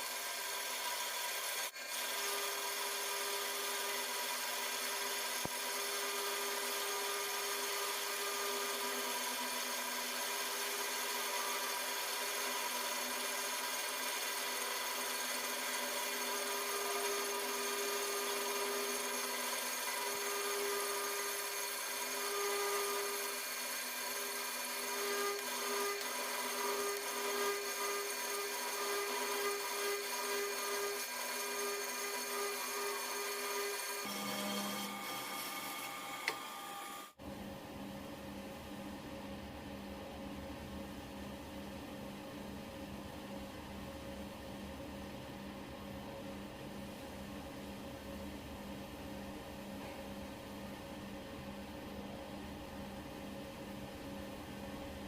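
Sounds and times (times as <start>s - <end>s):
lathe machining: 0.0s - 37.2s.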